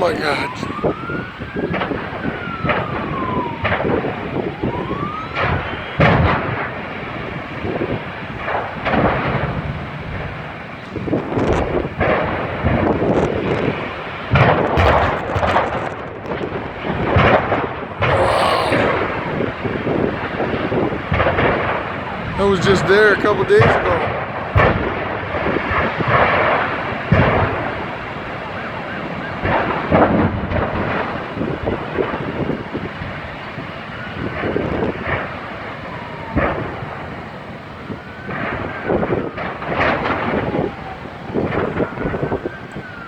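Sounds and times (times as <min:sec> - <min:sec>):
siren wailing: 0:00.0 - 0:06.1.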